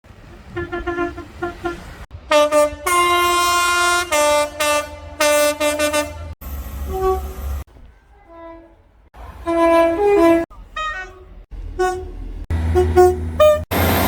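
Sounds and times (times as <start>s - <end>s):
train horn blasts: 0.5s - 8.8s, 9.4s - 11.2s, 11.8s - 13.9s.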